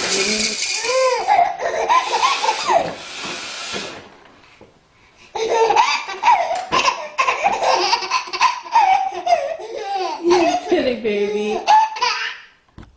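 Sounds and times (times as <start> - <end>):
baby belly laughing: 0.8 - 2.8, 5.3 - 12.5.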